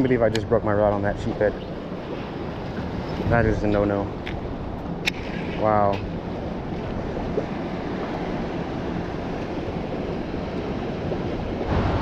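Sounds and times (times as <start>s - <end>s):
surf washing: 0.0s - 12.0s
wind: 0.0s - 12.0s.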